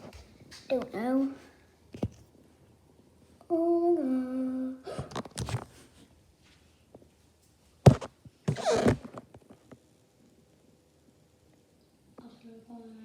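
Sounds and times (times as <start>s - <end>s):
rustling handling noises: 1.9s - 2.3s, 4.9s - 9.7s.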